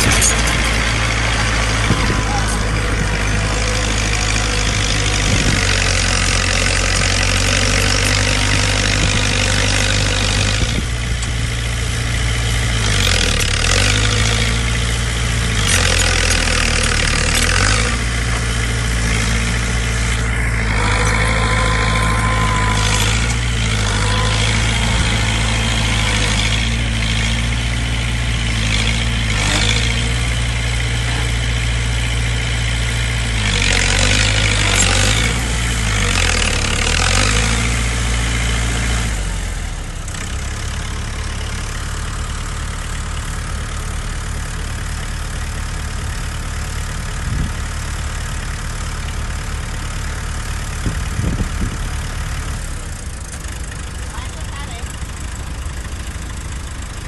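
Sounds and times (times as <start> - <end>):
heavy diesel engine running: 0.0 - 57.0.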